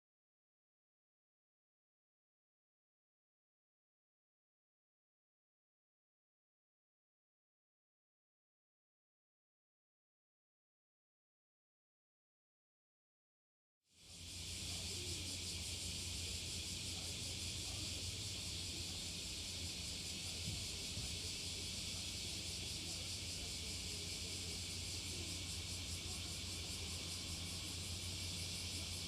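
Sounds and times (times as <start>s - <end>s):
high hiss: 14.0s - 29.0s.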